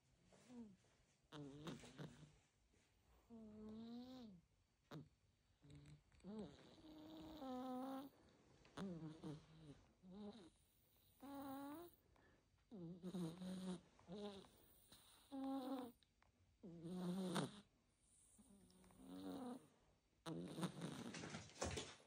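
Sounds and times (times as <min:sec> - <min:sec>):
cat snoring: 0:01.3 - 0:02.3, 0:03.3 - 0:05.0, 0:05.6 - 0:08.1, 0:08.8 - 0:12.0, 0:12.7 - 0:16.0, 0:16.6 - 0:21.2.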